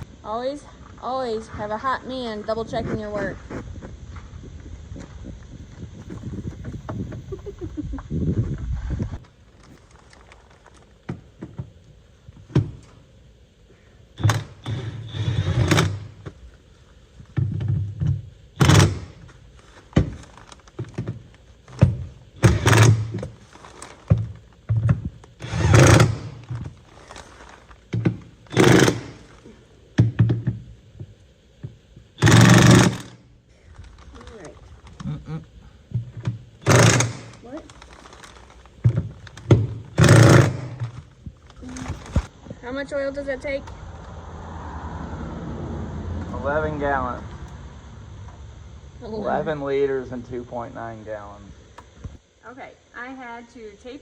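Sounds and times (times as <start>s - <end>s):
thunks and knocks on machinery: 12.5s - 12.8s.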